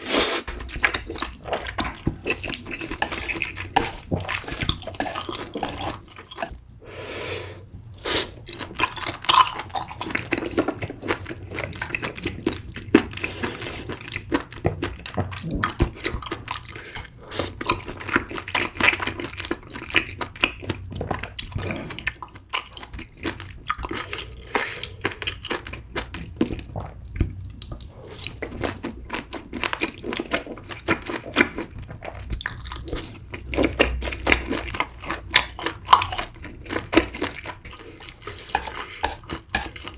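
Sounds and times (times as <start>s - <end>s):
person chewing food: 0.1s - 39.9s.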